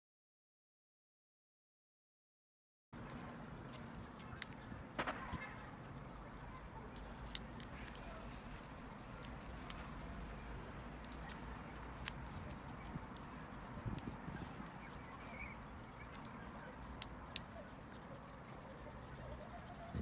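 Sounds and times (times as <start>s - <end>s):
clicks of tools on plastic parts: 11.0s - 15.4s.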